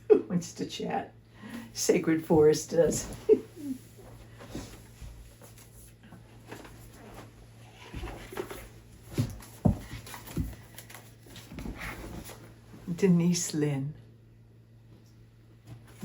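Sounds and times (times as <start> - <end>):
handling knocks and rustles: 4.0 - 12.8.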